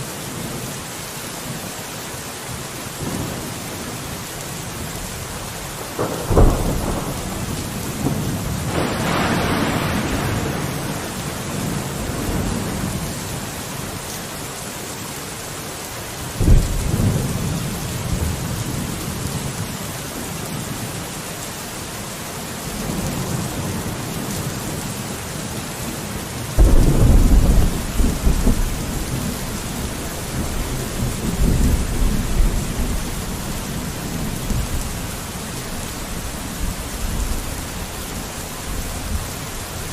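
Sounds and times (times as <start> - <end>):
steady rain: 0.0 - 39.9
rolling thunder: 5.7 - 13.1, 16.4 - 19.7, 26.6 - 38.0.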